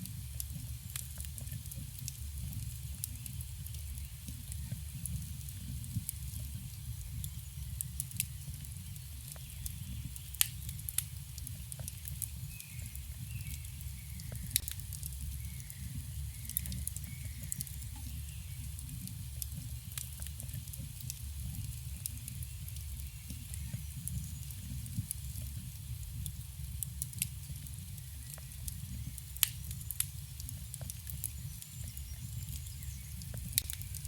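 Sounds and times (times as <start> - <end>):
campfire crackling and popping: 0.0 - 34.0
faint bird chirps: 15.4 - 18.7.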